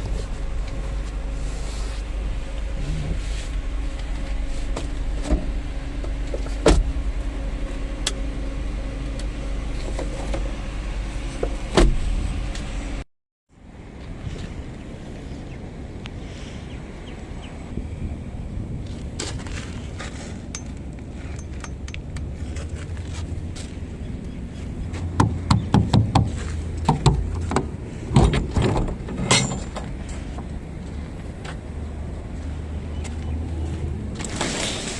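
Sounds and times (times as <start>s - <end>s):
van engine humming: 0.0s - 34.9s
sharp knocks: 25.1s - 28.4s.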